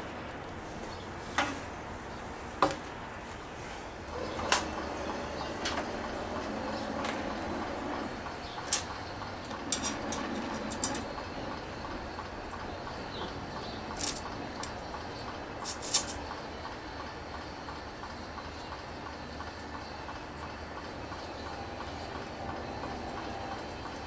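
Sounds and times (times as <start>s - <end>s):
sharp metallic clicks: 8.2s - 24.0s.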